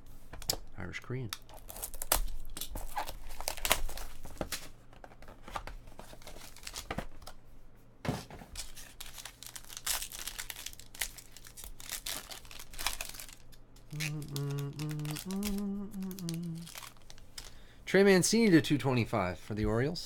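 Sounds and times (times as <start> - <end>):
wrappers crinkling and tearing: 0.8 - 4.7, 5.9 - 7.2, 8.6 - 17.6
person humming: 13.9 - 16.9.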